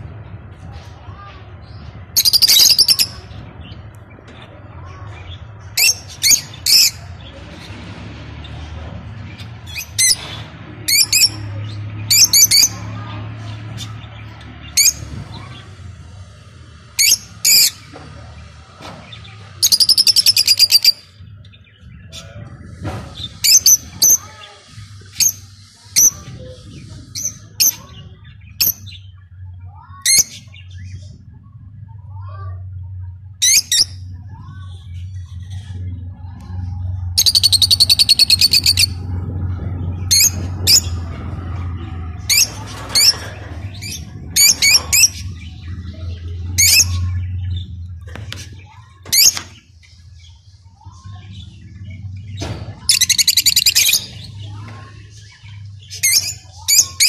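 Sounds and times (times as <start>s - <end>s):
lovebirds chirping and squawking: 0.0s - 57.0s
rapid bird chattering: 37.1s - 39.0s, 52.8s - 57.0s.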